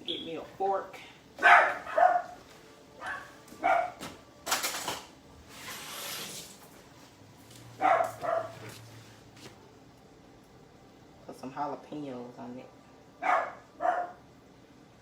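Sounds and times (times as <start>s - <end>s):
dog barking: 1.4s - 2.4s, 3.0s - 4.0s, 7.8s - 8.7s, 13.2s - 14.2s.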